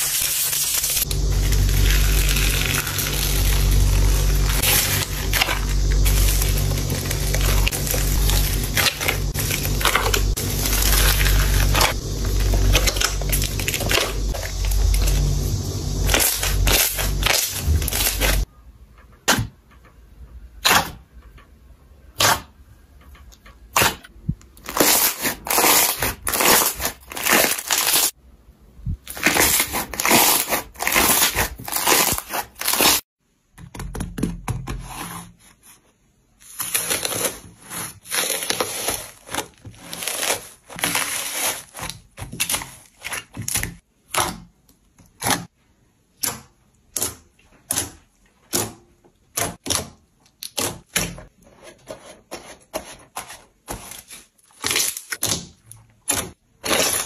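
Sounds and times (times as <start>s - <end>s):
slime popping and crackling: 0.0s - 18.5s.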